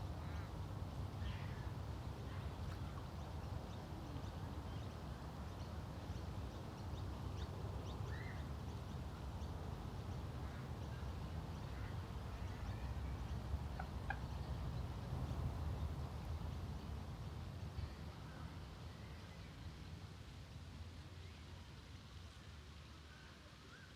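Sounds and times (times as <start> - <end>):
bird calls: 6.1 - 9.5, 10.4 - 15.0.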